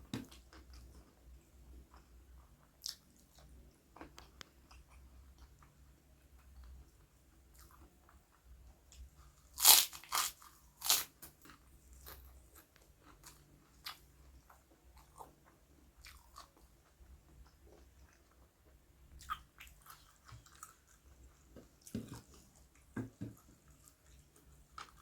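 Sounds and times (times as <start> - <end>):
person chewing: 9.2 - 16.7, 19.2 - 22.8
loud crunchy bites: 9.6 - 11.1.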